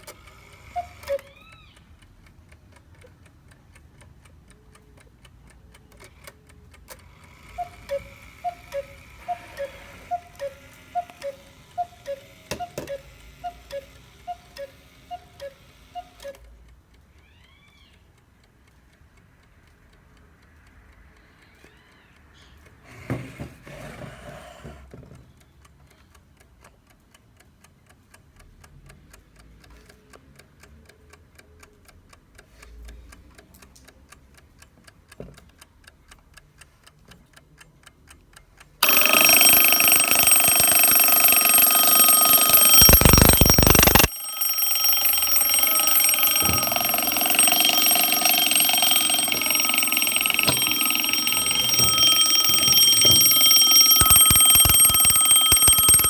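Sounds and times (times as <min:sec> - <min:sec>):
clock ticking softly: 0:00.8 - 0:08.9, 0:25.3 - 0:56.0
alarm clock ringing: 0:07.6 - 0:13.0, 0:38.8 - 0:56.0.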